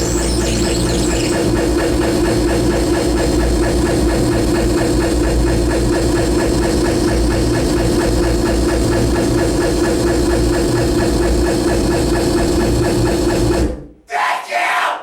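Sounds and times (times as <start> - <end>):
harsh distorted noise music: 0.0 - 7.5.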